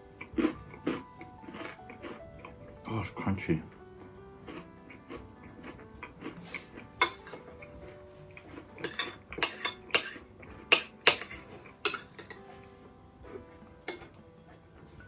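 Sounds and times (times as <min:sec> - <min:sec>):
cutlery clinking on a plate: 0:06.0 - 0:14.2.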